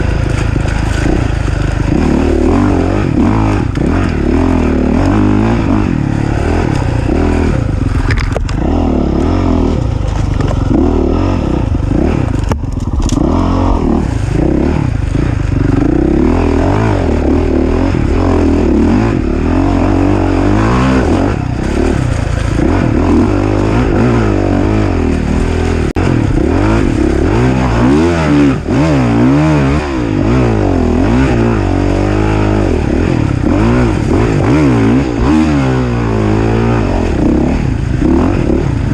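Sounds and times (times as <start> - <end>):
off-road engine revving: 0.0 - 38.9
clattering and scraping: 6.6 - 8.6, 9.7 - 10.8.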